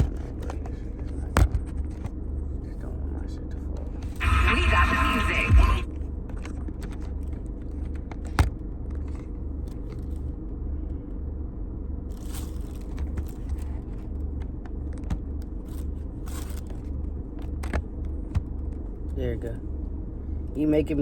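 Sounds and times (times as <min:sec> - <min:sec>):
rustling: 0:12.1 - 0:14.1.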